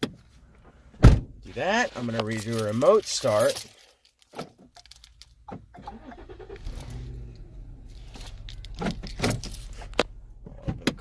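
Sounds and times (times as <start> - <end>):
car engine starting and idling: 4.8 - 11.0.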